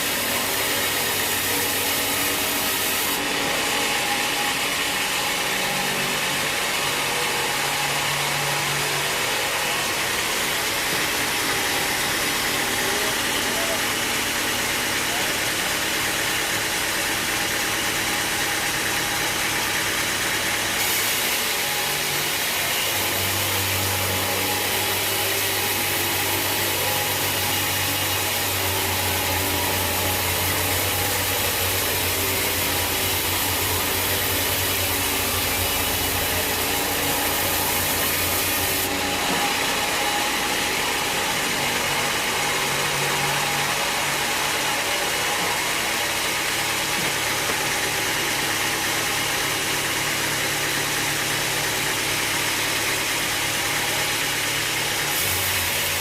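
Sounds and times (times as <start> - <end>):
sawmill engine running: 0.0 - 56.0
low hum: 23.3 - 43.4.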